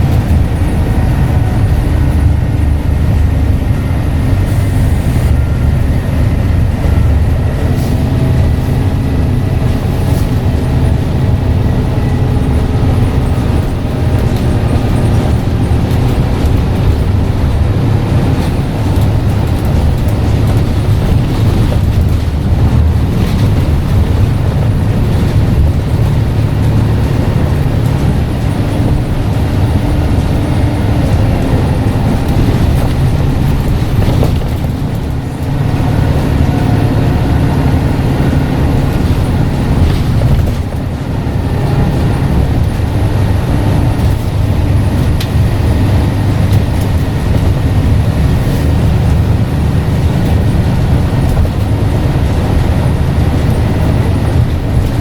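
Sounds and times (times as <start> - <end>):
bus engine drone: 0.0 - 55.0.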